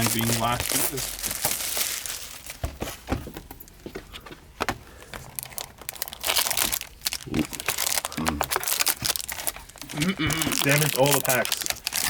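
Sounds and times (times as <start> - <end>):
packaging crinkling and tearing: 0.0 - 2.6, 5.2 - 12.0.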